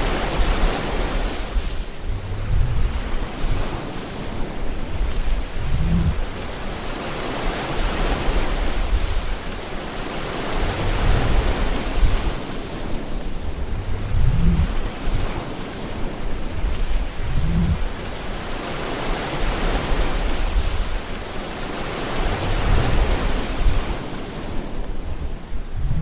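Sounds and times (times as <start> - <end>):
ocean waves breaking: 0.0 - 26.0.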